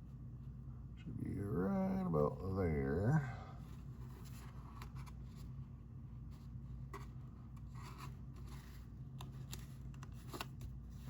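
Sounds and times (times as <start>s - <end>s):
steady low hum: 0.0s - 11.0s
cardstock rustling and scraping: 3.8s - 11.0s.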